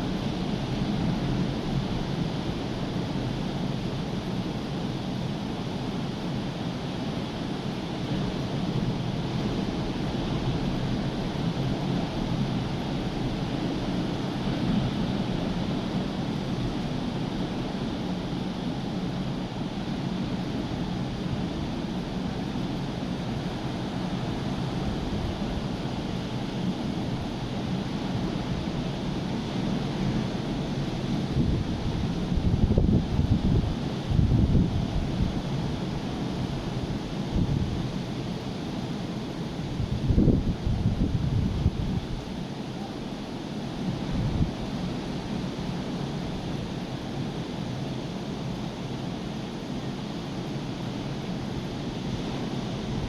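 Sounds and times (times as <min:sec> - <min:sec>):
wind buffeting microphone: 0:31.1 - 0:38.3, 0:39.7 - 0:42.4, 0:43.9 - 0:44.9.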